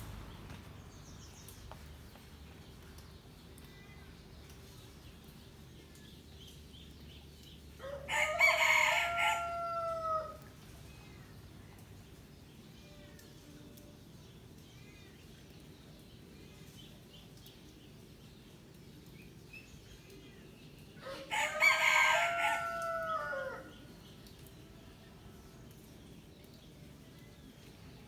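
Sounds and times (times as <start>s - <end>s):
rooster crowing: 7.8s - 10.4s, 21.0s - 23.7s.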